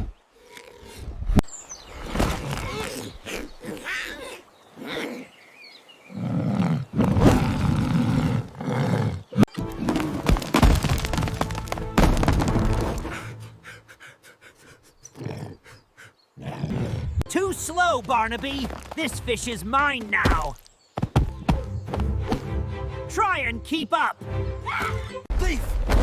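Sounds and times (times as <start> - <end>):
heavy thuds: 9.6 - 13.3.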